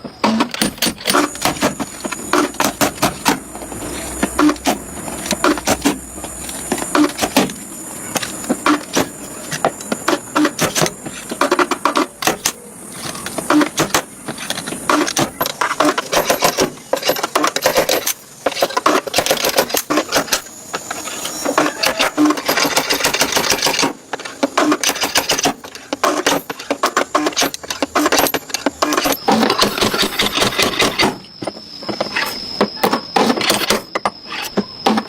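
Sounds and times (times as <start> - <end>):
rapid metallic clicking: 9.8 - 31.2.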